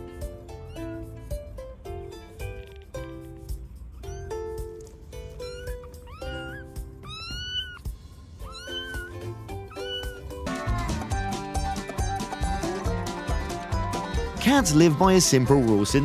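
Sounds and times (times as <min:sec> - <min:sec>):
background music: 0:00.0 - 0:16.0
cat meowing: 0:00.6 - 0:01.0, 0:04.0 - 0:04.5, 0:05.3 - 0:10.4.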